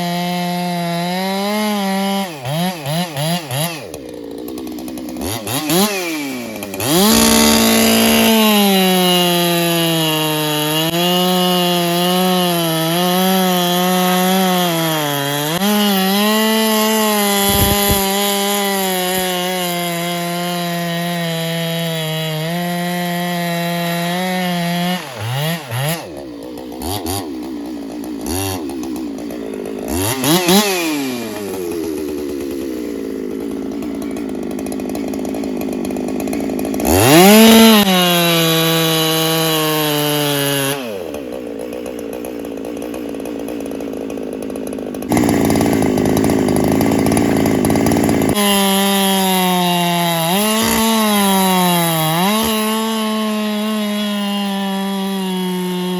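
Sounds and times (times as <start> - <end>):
chainsaw cutting wood: 0.0 - 55.9.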